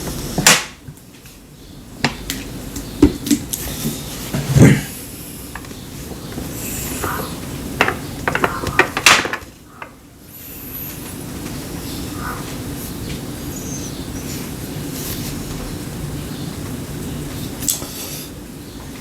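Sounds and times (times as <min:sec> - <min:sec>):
steady low hum: 0:00.0 - 0:08.8.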